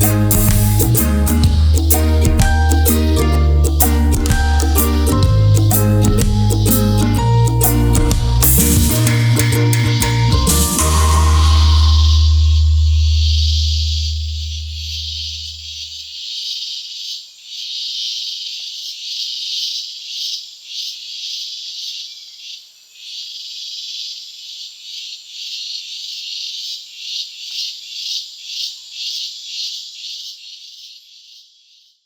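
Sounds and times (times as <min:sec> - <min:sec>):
low music note: 0:00.0 - 0:15.6.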